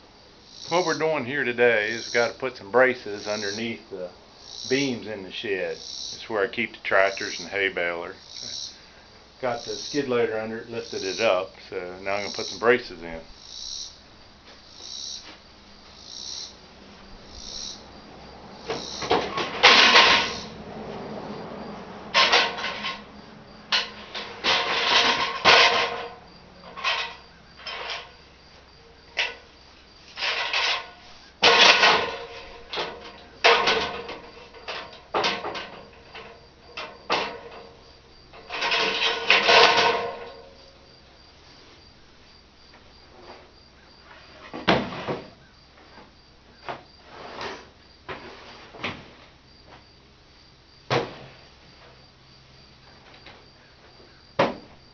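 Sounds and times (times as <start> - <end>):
wooden braces clunking and scraping: 18.6 - 41.0, 42.6 - 49.9.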